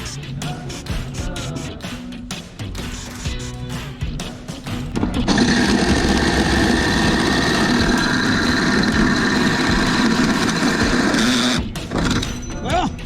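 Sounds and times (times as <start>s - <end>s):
engine running: 5.0s - 12.3s.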